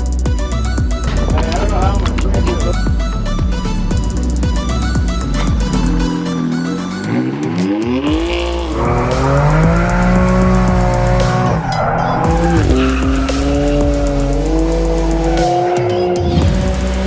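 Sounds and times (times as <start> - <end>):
tyres squealing: 1.0 - 2.9
car engine revving hard: 5.2 - 17.0.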